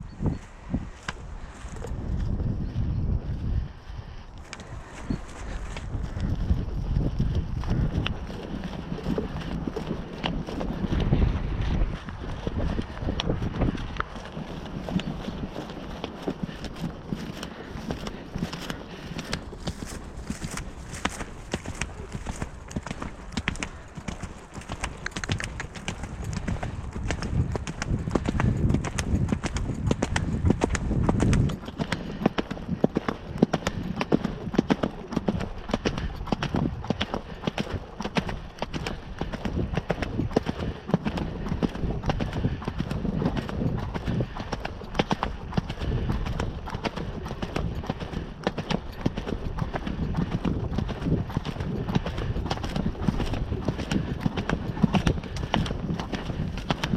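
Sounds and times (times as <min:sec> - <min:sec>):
horse hoofbeats: 0:00.0 - 0:56.9.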